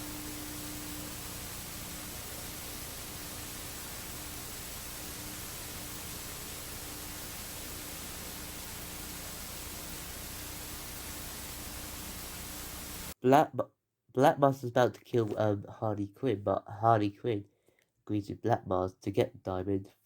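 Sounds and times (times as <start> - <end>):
faint steady hum: 0.0 - 13.2
steady background hiss: 0.0 - 13.2.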